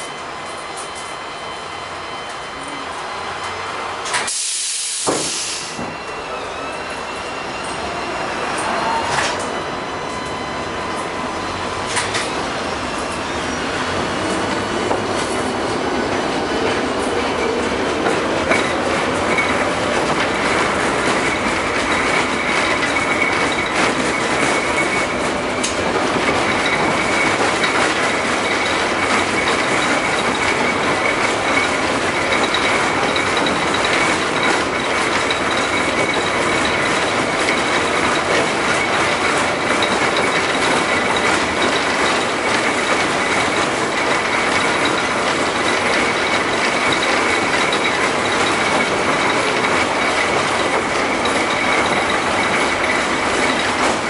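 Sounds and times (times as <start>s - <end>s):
tram motor whine: 0.0s - 54.0s
tram wheels rumbling on rails: 0.0s - 54.0s
faint high squeal: 5.4s - 11.5s.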